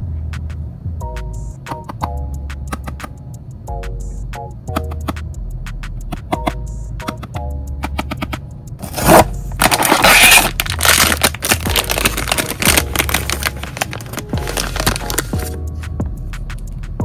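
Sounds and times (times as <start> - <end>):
packaging crinkling and tearing: 8.8 - 15.6.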